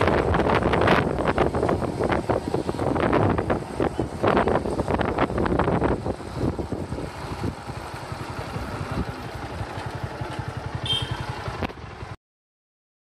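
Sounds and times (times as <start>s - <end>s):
wind buffeting microphone: 0.0s - 9.6s
motorcycle engine running: 0.0s - 12.2s.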